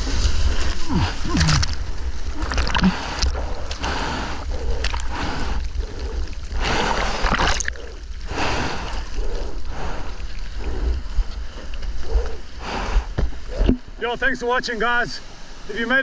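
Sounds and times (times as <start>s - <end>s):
water splashing: 0.0s - 11.2s
low rumble of water: 0.0s - 14.0s.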